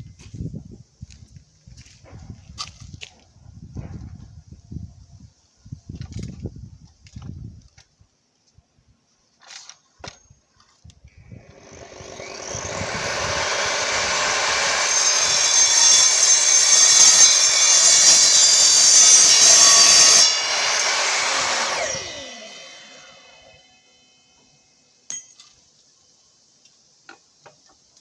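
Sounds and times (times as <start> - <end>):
miter saw cutting steel: 11.4 - 24.0.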